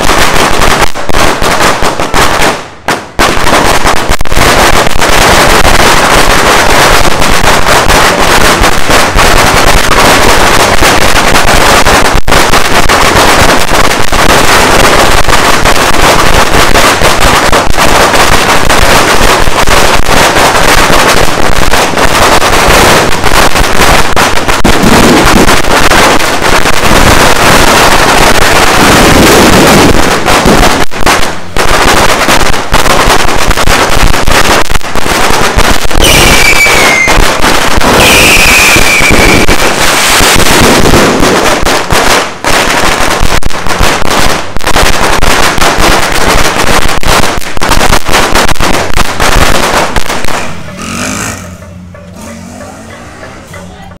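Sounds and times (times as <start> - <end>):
firecrackers crackling: 0.0 - 54.0.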